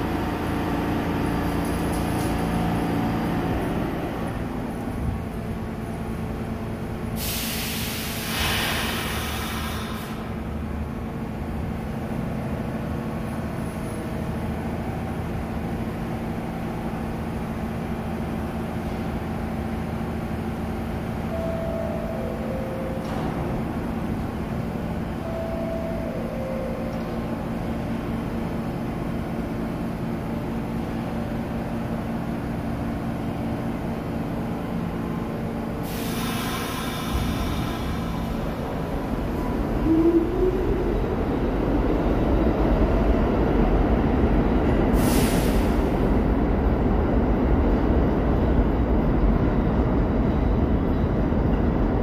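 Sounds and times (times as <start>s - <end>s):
hiss of released air: 7.2s - 10.3s, 35.8s - 38.4s, 44.9s - 46.0s.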